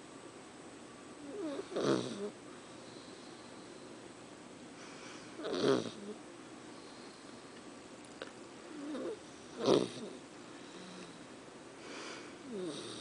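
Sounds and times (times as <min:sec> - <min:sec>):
puppy snoring: 0:01.2 - 0:02.4, 0:05.0 - 0:06.2, 0:08.7 - 0:11.3, 0:11.9 - 0:13.0.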